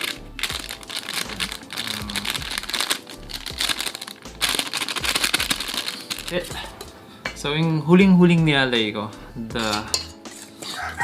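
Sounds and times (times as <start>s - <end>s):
plastic packet crinkling: 0.0s - 6.5s
powder shaken out: 0.0s - 6.5s
background music: 0.0s - 11.0s.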